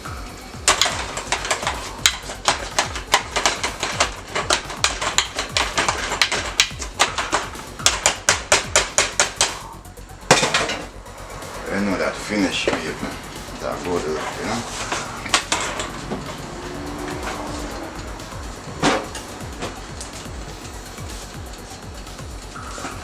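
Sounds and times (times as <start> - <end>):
loud clatter: 0.0 - 23.0
masher mashing vegetables in pot: 0.6 - 9.6.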